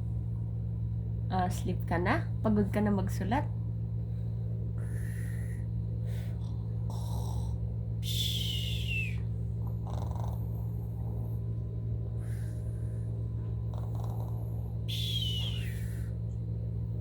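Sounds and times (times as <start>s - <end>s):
toddler pretend-snoring: 9.7s - 11.2s, 13.7s - 14.6s.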